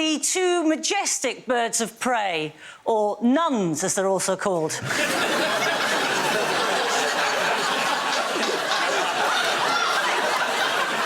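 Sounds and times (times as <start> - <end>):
studio audience laughing: 4.8 - 11.0.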